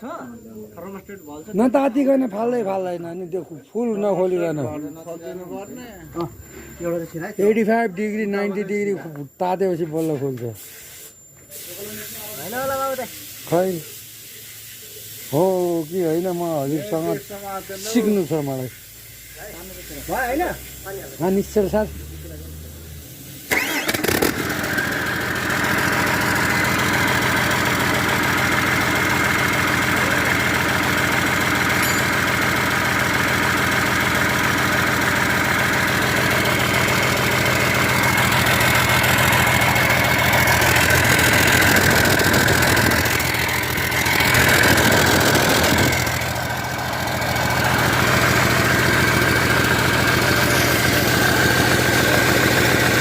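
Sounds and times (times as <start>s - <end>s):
diesel engine starting and idling: 15.4s - 53.0s.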